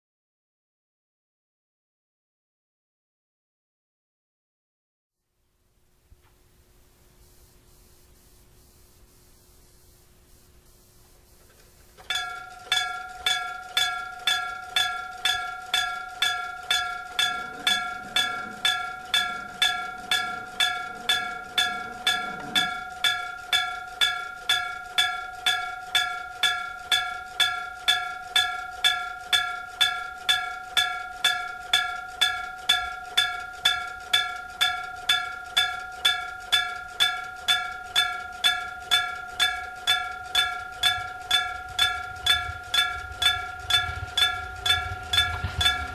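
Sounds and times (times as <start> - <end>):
electric crossing bell ringing: 12.0 - 45.9.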